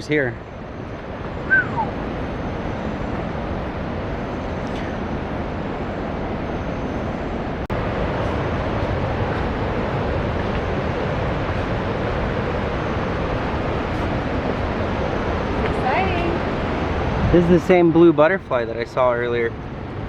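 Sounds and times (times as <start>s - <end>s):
waterfall and river rushing: 4.9s - 18.0s.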